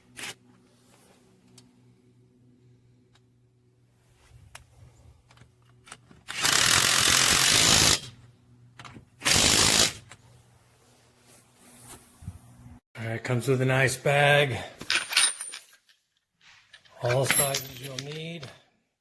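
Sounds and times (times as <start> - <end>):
impact wrench bursts: 6.3 - 8.1, 9.2 - 10.0.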